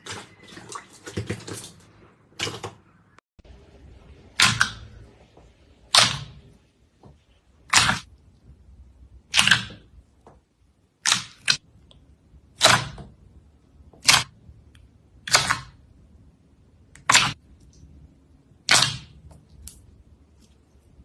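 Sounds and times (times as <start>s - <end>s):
slime popping: 9.3s - 9.9s, 18.6s - 19.9s.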